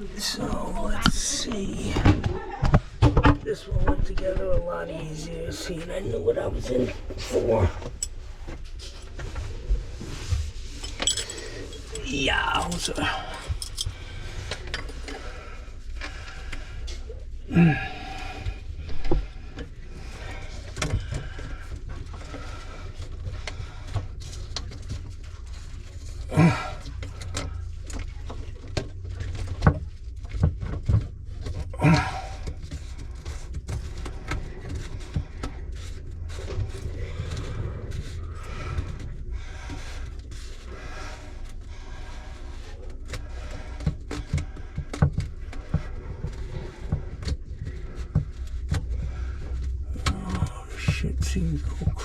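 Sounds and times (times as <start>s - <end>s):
steady low rumble: 0.0s - 16.8s, 46.0s - 52.0s.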